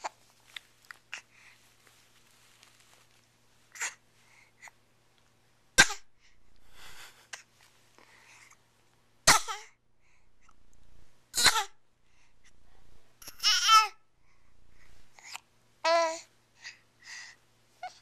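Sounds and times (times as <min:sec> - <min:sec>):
child fake-coughing: 0:05.8 - 0:06.1, 0:09.3 - 0:09.8, 0:11.4 - 0:11.8.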